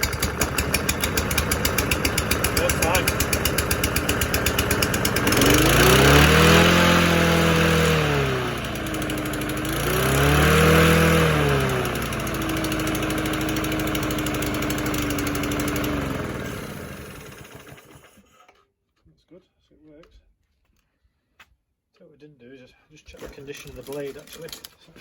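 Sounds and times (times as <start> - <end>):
lawn mower engine running: 0.0 - 18.2.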